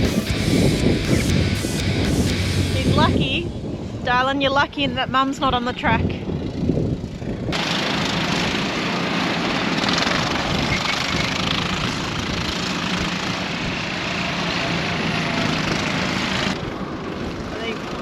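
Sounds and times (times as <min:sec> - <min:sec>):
go-kart engines buzzing: 0:06.0 - 0:18.0.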